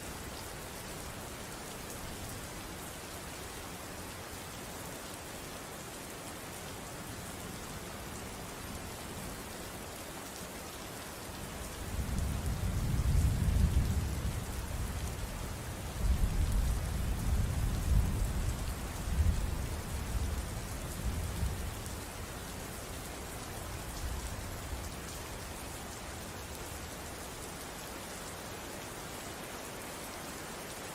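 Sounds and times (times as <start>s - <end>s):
steady rain falling: 0.0s - 30.9s.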